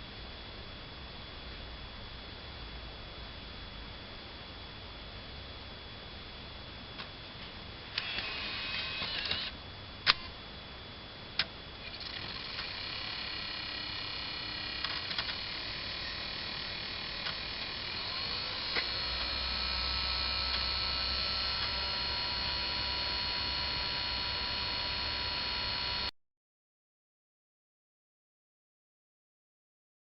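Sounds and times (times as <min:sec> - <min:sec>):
disc drive whining: 0:07.0 - 0:10.4, 0:11.3 - 0:26.1
rising tone and low hum: 0:15.8 - 0:26.1.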